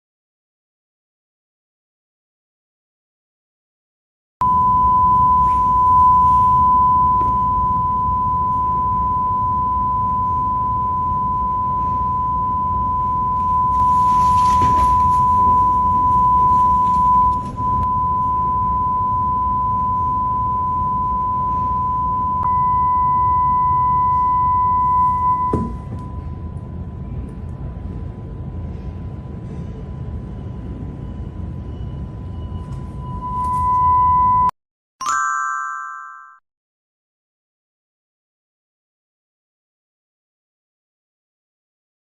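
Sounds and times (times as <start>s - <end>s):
steady test tone: 4.4s - 27.1s, 30.2s - 34.5s
faint higher tone: 4.4s - 27.2s, 30.9s - 36.4s.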